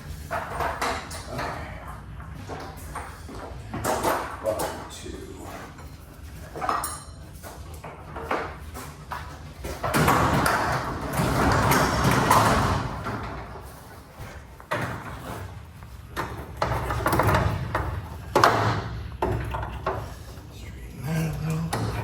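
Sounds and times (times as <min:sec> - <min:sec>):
garage door rollers rumbling: 0:00.0 - 0:22.0
knocks and rattles: 0:05.8 - 0:20.6.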